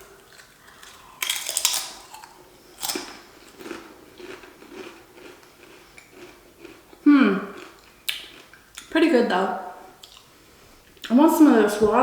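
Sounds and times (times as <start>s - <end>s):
potato chips crunching: 0.0s - 8.9s.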